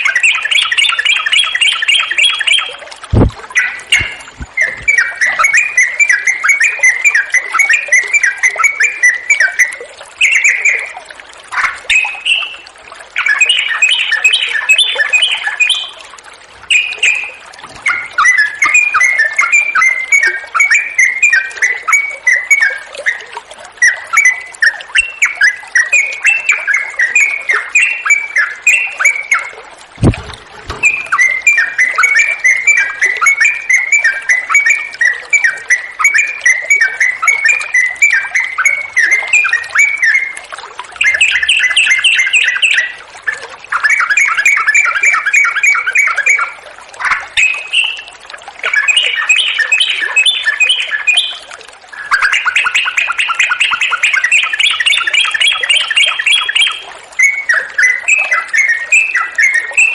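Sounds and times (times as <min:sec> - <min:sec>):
flowing water hiss: 0:00.0 - 0:07.8, 0:23.4 - 0:59.2
bulbul singing chattering song: 0:00.0 - 0:16.1, 0:16.7 - 0:59.9
low thump: 0:03.1 - 0:04.9, 0:30.0 - 0:31.1.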